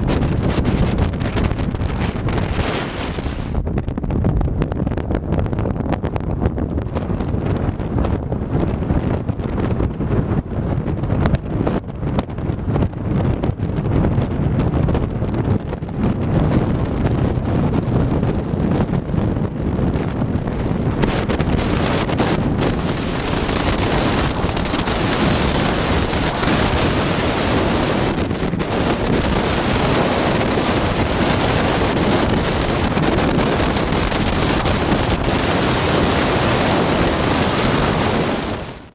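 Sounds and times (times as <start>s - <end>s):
heavy surf: 0.0s - 4.6s, 6.4s - 38.9s
wind buffeting microphone: 0.0s - 38.9s.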